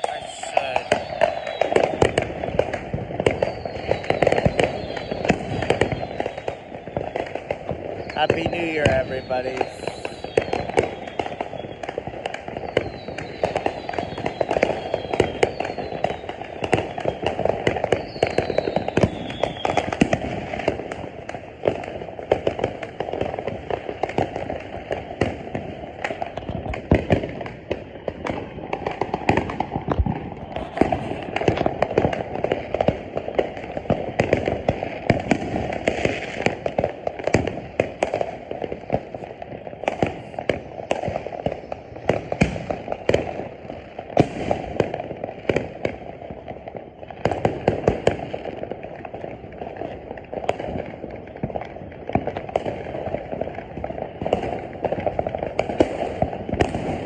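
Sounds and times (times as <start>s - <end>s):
falling firework whistles: 0.0s - 36.7s, 55.6s - 57.0s
fireworks and firecrackers banging: 0.0s - 57.0s.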